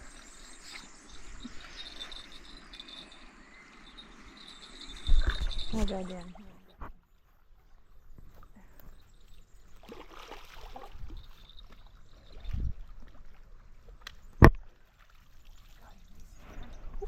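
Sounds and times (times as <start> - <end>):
water splashing and sloshing: 3.9 - 17.0.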